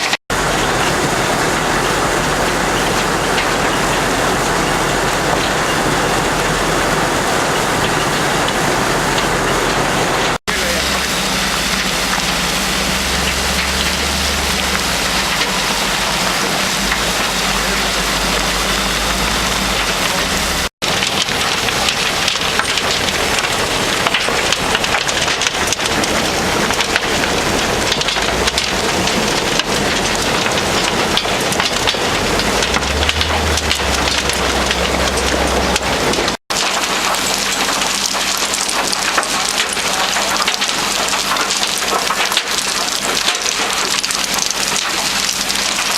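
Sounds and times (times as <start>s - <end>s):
low machine rumble: 0.3s - 41.4s
rubble clattering in rotating drum: 20.9s - 45.9s.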